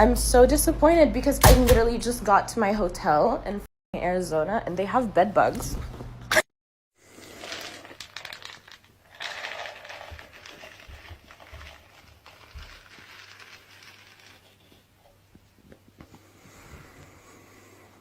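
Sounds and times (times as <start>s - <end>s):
rustling crinkling noise: 7.3s - 16.3s.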